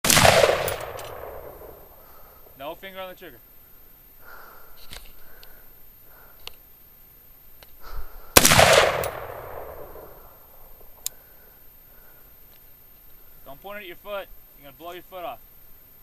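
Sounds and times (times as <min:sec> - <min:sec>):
rifle shot with echo: 0:00.0 - 0:02.0, 0:08.4 - 0:11.0.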